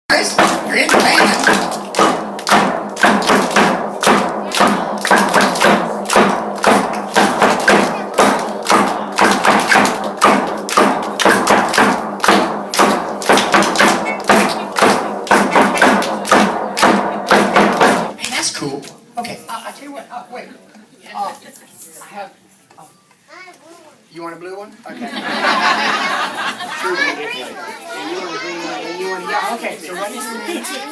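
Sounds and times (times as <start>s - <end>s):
percussion steady beat: 0.1s - 19.7s.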